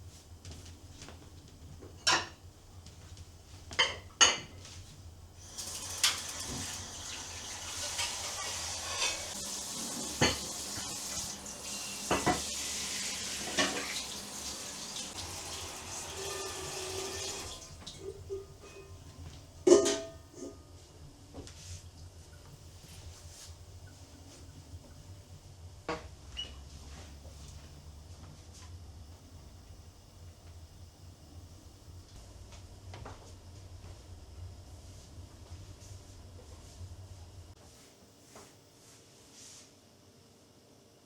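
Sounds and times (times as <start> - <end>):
dishes and cutlery clinking: 3.7 - 4.7, 7.9 - 9.4, 10.0 - 10.9, 12.1 - 12.5, 13.4 - 14.0, 17.9 - 20.6
kitchen tap running: 5.4 - 18.1.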